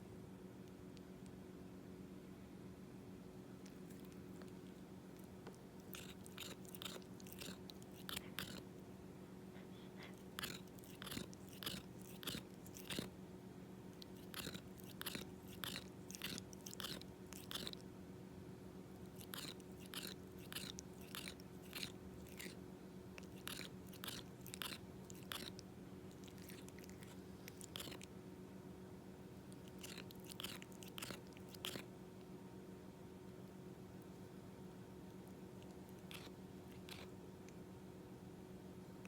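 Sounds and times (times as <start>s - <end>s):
cat grinding teeth: 3.5s - 8.8s, 9.6s - 13.2s, 13.9s - 17.9s, 18.9s - 28.2s, 29.4s - 32.0s, 35.1s - 37.6s.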